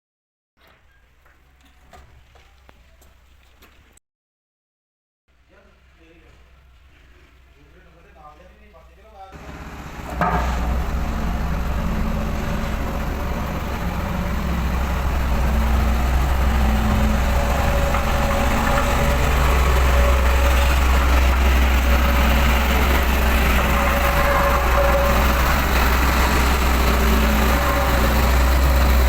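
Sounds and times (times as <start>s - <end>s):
diesel engine running: 9.4s - 29.0s.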